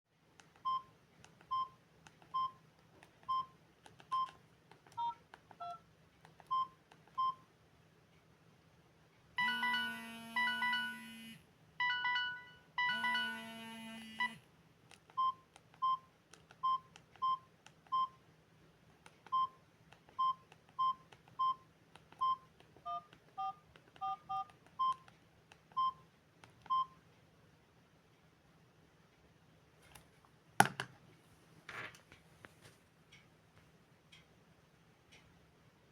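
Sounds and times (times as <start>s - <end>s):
phone key beeps: 0.5s - 2.6s, 3.2s - 5.8s, 6.4s - 7.5s, 9.4s - 11.2s, 11.8s - 13.6s, 15.1s - 18.2s, 19.2s - 26.0s, 26.6s - 27.0s
electronic ringtone melody: 9.4s - 11.2s, 11.8s - 13.6s.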